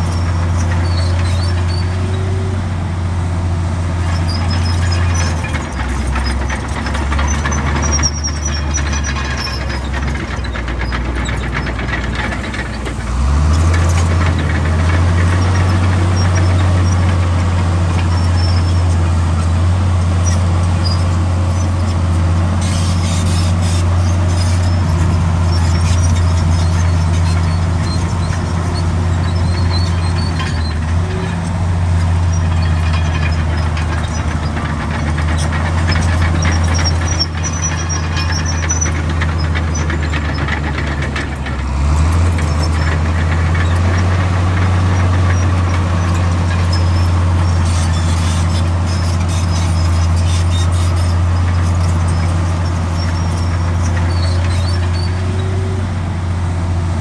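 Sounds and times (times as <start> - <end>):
bulldozer diesel engine running: 0.0 - 57.0
high squeals: 13.5 - 41.2, 41.9 - 55.8.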